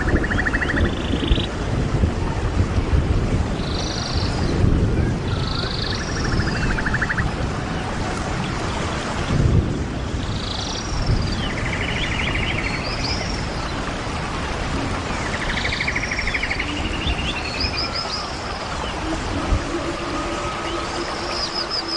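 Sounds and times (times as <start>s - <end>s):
bird singing: 0.0s - 1.5s, 5.3s - 7.3s, 15.2s - 21.9s
low rumbling noise: 15.8s - 21.9s.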